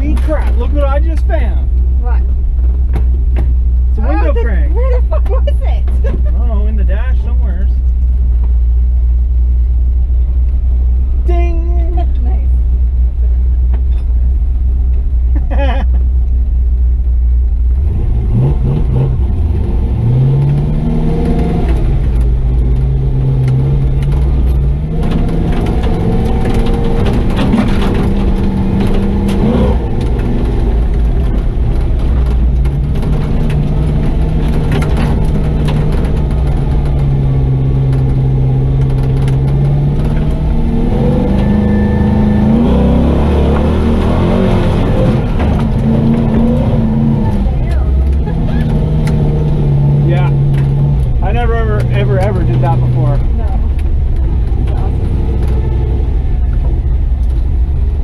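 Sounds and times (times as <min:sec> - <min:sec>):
knocks and rattles: 0:00.0 - 0:03.8, 0:20.4 - 0:57.6
truck engine under load: 0:12.0 - 0:58.0.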